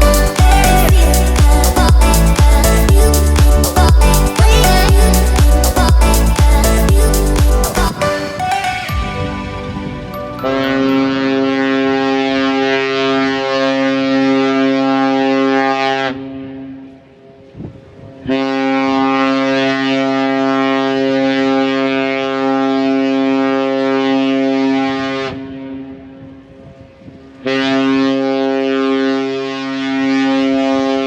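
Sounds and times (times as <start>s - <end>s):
ship horn blasts: 8.4s - 16.5s, 18.3s - 25.8s, 27.5s - 31.0s.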